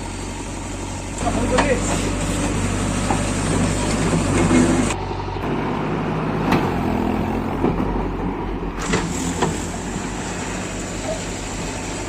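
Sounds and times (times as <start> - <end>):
diesel engine running: 0.0 - 12.0.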